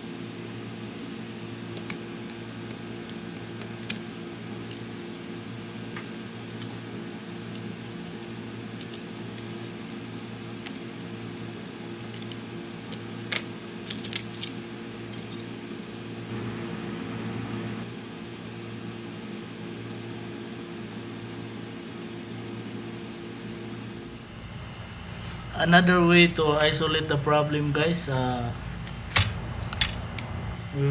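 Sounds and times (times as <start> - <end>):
steady low hum: 0.0 - 30.9.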